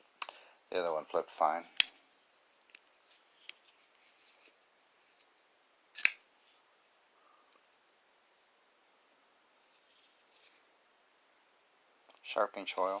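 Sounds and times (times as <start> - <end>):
knife blade snapping: 6.0 - 6.2.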